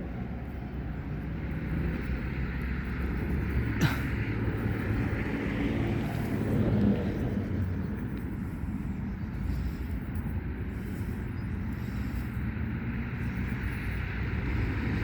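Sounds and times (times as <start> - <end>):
low outdoor rumble: 0.0 - 15.0.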